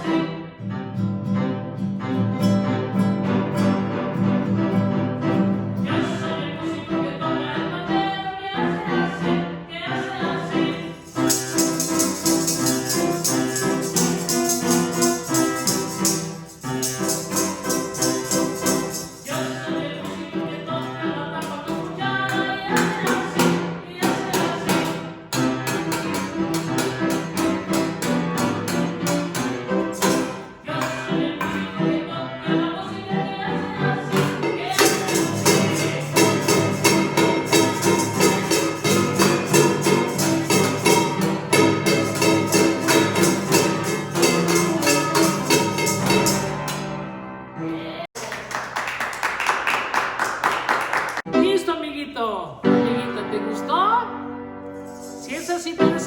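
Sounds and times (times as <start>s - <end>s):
children's song on piano: 0.0s - 48.2s, 52.6s - 56.0s
percussion beat: 10.9s - 19.7s, 21.5s - 31.8s, 34.0s - 47.0s, 48.2s - 51.3s, 54.8s - 56.0s
fast jingling rhythm: 11.0s - 19.7s, 34.2s - 46.8s.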